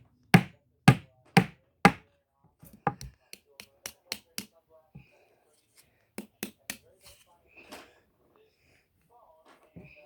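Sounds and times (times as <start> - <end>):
sharp knocks: 0.4 - 2.0.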